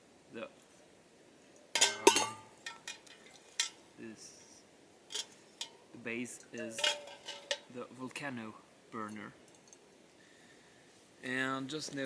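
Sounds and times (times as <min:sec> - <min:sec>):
light metal clinks and taps: 0:01.6 - 0:03.8, 0:05.1 - 0:05.8, 0:06.4 - 0:07.7, 0:09.1 - 0:09.9
metal cookware clanking: 0:01.8 - 0:03.8, 0:05.1 - 0:05.8, 0:06.5 - 0:07.7.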